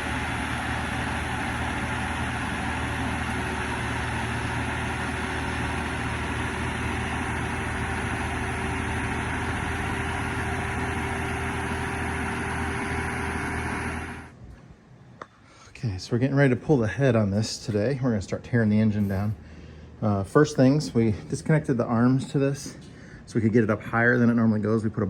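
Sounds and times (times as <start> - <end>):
heavy engine running: 0.0 - 14.4
faint steady whine: 0.0 - 25.0.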